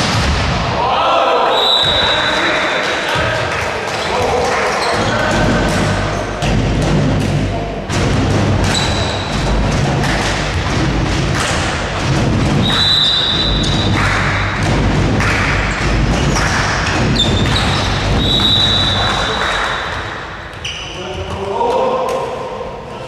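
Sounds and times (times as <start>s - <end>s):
ball thumping on court: 4.9s - 20.0s.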